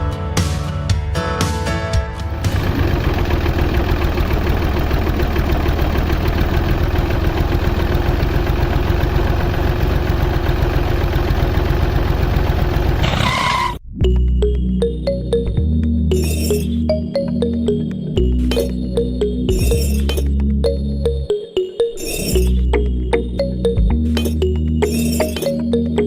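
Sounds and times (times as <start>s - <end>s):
music: 0.0s - 2.5s, 13.8s - 26.0s
small engine running: 2.3s - 13.8s.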